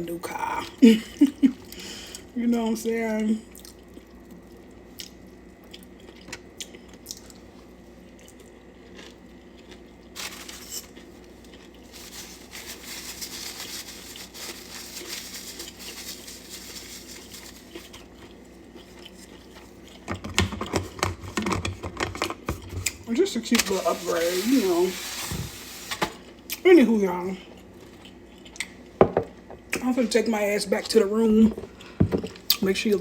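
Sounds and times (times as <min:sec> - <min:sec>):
person chewing food: 0:03.5 - 0:11.9, 0:17.0 - 0:21.0, 0:27.6 - 0:29.0
crinkling: 0:10.1 - 0:19.7.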